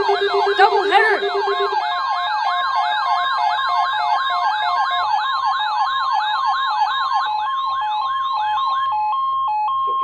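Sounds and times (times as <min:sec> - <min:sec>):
alternating two-tone beeping: 0:00.0 - 0:02.0
electronic alert siren wailing: 0:00.0 - 0:10.0.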